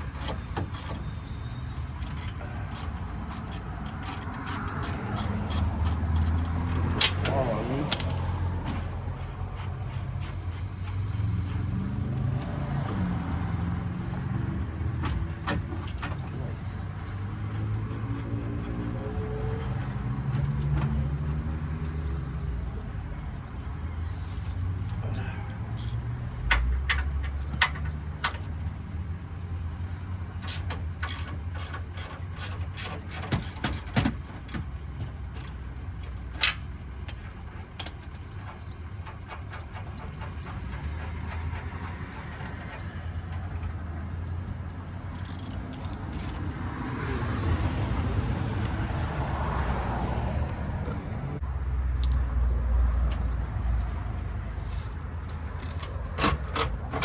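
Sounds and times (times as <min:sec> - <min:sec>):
metal tools clinking and knocking: 0:01.8 - 0:09.0, 0:45.1 - 0:47.2, 0:52.0 - 0:53.4, 0:54.7 - 0:57.0.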